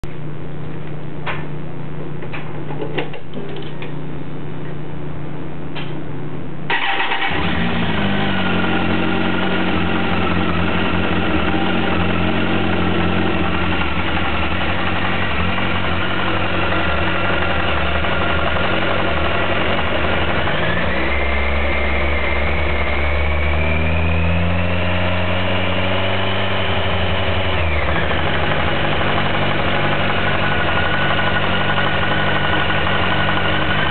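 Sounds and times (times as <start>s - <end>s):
steady hum: 0.0s - 6.7s
motorcycle engine starting and idling: 6.7s - 33.9s
engine knocking: 9.1s - 21.0s, 27.5s - 33.9s.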